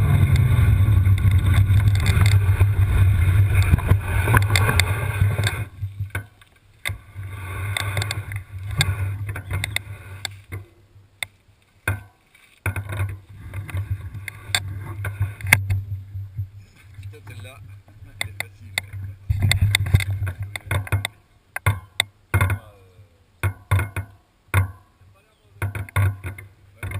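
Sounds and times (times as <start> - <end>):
wheelchair tyres rumbling on trail: 0.0 - 26.9
rattling and sharp knocks: 17.2 - 22.6, 23.4 - 25.0, 25.6 - 26.9.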